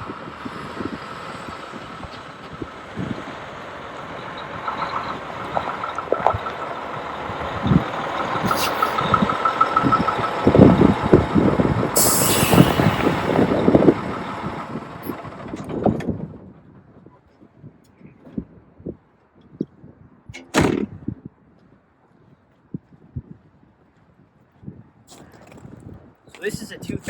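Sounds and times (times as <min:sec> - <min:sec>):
diesel truck running: 0:00.0 - 0:16.8
air brake hiss: 0:08.4 - 0:09.1, 0:12.0 - 0:13.5.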